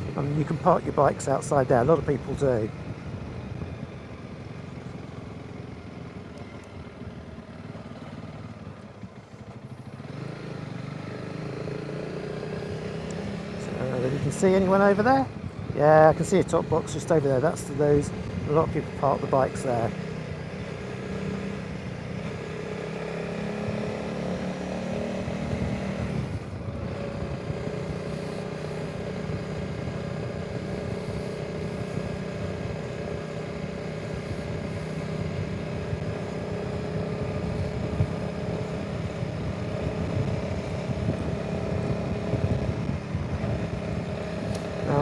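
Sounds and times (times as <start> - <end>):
motorcycle engine running: 0.0 - 45.0
wind noise on microphone: 25.2 - 27.8, 37.3 - 45.0.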